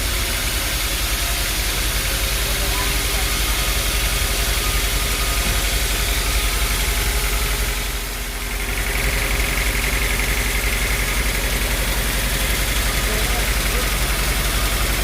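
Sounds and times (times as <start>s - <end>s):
high steady whine: 0.0s - 15.0s
sawmill machinery pulsing: 0.0s - 15.0s.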